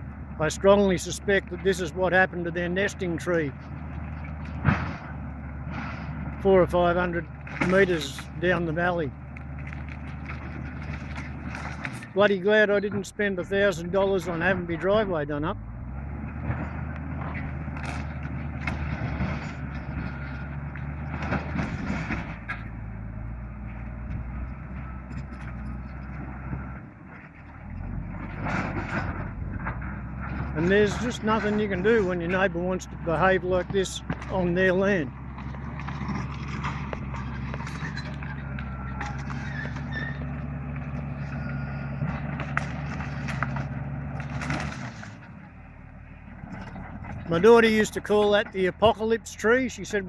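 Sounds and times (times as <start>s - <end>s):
bulldozer diesel engine running: 0.0s - 50.0s
short squeaks: 36.7s - 40.4s.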